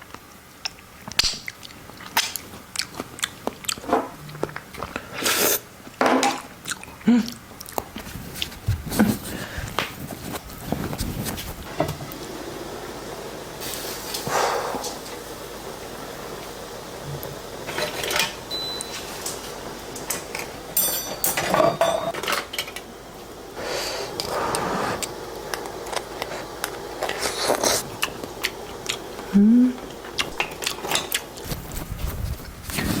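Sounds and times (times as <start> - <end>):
noisy eating: 0.0 - 20.8, 21.6 - 33.0
shells and utensils clattering: 20.8 - 22.4.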